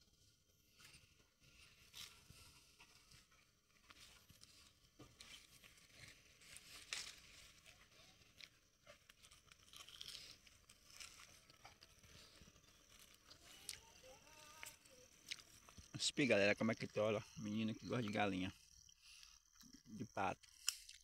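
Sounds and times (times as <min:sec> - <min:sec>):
rustling and crunching: 0:00.6 - 0:16.0.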